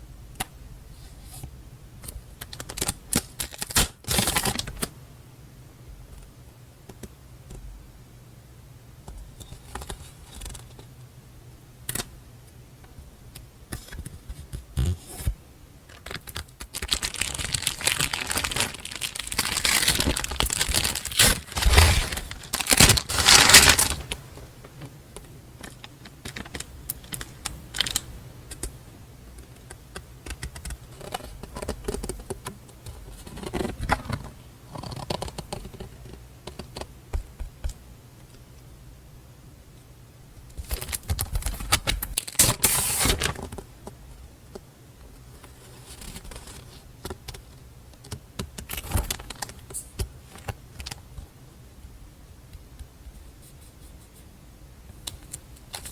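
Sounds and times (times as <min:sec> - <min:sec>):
paper wrapping rustling: 0:15.9 - 0:25.0, 0:25.6 - 0:28.1, 0:40.6 - 0:43.6.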